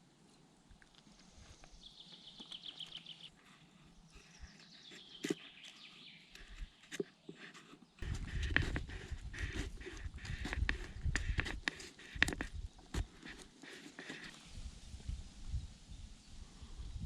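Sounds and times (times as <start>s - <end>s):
close crunching and rustling: 0.8s - 14.5s
small bird singing trills: 1.7s - 3.4s, 4.1s - 6.8s.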